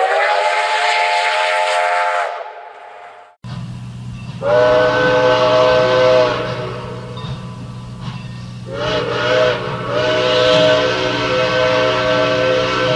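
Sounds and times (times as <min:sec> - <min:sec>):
train whistle blasts: 0:00.0 - 0:03.3, 0:04.4 - 0:07.6, 0:08.6 - 0:12.9
low steady rumble: 0:03.4 - 0:12.9.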